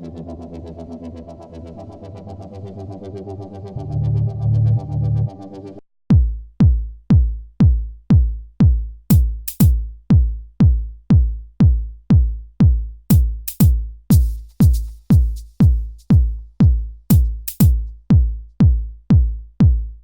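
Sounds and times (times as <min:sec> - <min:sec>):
drum machine kick beat: 0:06.1 - 0:20.0.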